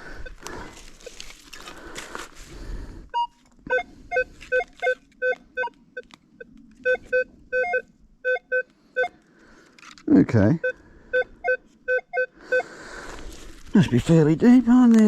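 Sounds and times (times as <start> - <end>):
metal detector beeps: 3.2 - 9.2, 13.8 - 14.2.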